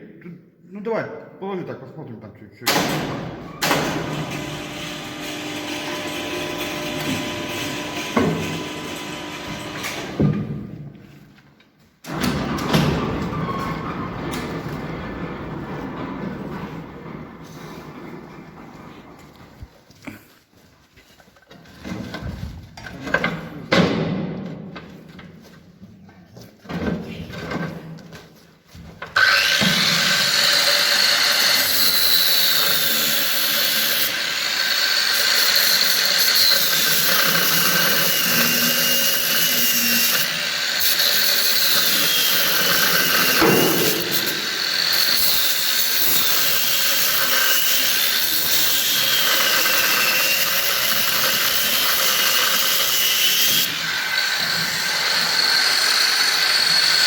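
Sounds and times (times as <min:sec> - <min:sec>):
power tool whining: 0:03.4 - 0:10.2, 0:29.2 - 0:57.0.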